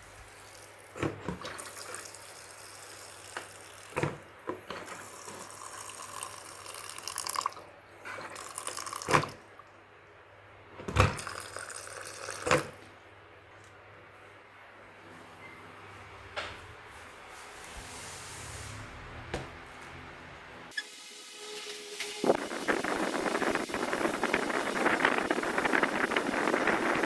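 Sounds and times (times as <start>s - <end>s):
water being poured: 4.9s - 9.5s, 11.0s - 12.7s, 20.7s - 27.0s.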